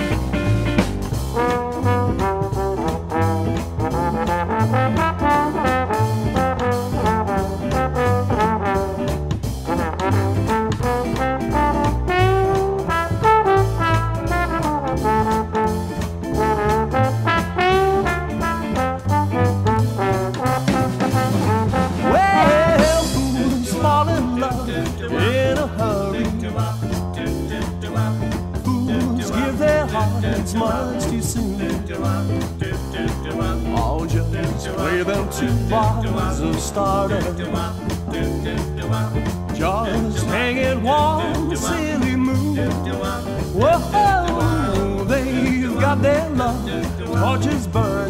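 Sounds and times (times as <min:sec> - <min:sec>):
brass horn melody: 0:00.0 - 0:24.5
live swing band playing: 0:00.0 - 0:48.0.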